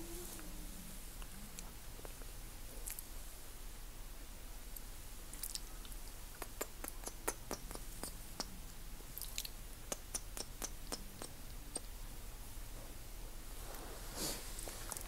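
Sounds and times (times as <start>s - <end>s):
wet mouth clicks and lip smacks: 5.3s - 8.5s, 9.2s - 11.9s.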